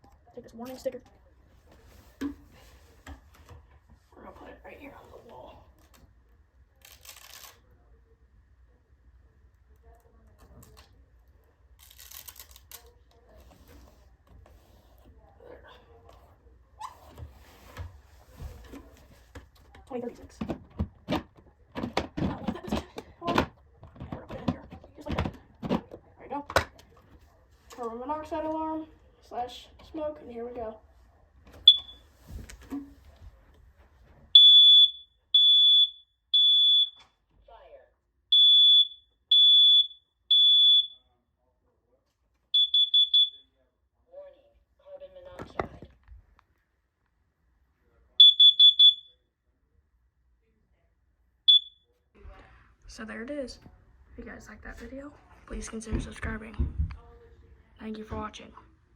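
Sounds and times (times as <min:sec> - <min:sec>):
smoke alarm beeps: 0:31.6 - 0:32.1, 0:34.4 - 0:37.1, 0:38.3 - 0:41.1, 0:42.6 - 0:43.6, 0:48.2 - 0:49.2, 0:51.5 - 0:51.9.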